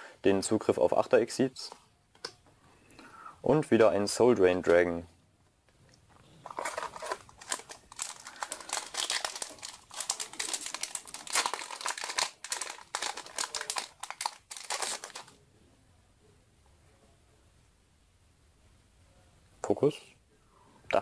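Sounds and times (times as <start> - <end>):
foil wrapper crinkling and tearing: 6.4 - 15.4.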